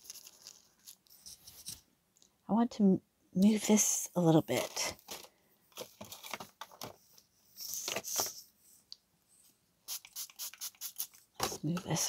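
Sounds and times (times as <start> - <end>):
paper rustling: 0.0 - 1.8, 4.6 - 7.0, 7.6 - 8.4.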